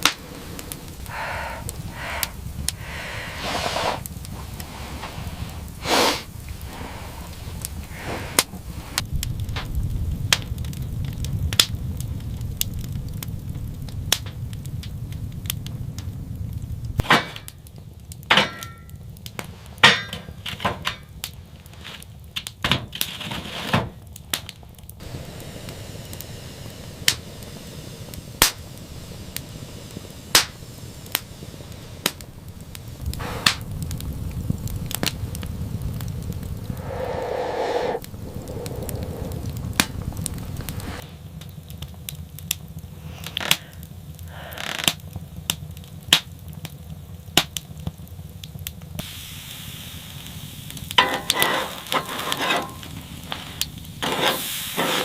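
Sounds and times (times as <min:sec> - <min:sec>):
low rumble: 0:00.0 - 0:03.4, 0:30.7 - 0:42.0
sharp cracks and knocks: 0:17.0 - 0:24.6, 0:28.4 - 0:28.6, 0:44.7 - 0:46.7.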